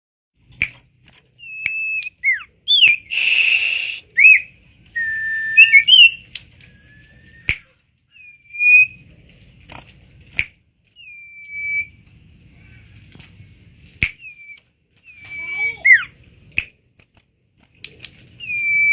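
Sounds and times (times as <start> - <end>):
bird sharp clicks: 0.6 - 4.0, 14.0 - 15.4, 16.0 - 18.9
bird harsh rasp: 1.4 - 4.1
bird whistled song: 1.4 - 9.0, 10.9 - 12.0, 14.0 - 16.2, 18.3 - 18.9.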